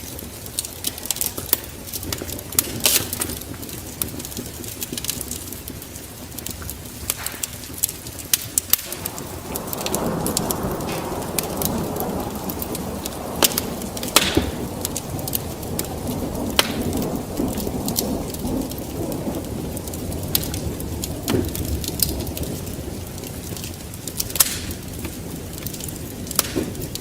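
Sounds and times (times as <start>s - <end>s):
steady rain: 0.0s - 27.0s
wood fire crackling and popping: 0.0s - 27.0s
low roll of thunder: 8.8s - 27.0s.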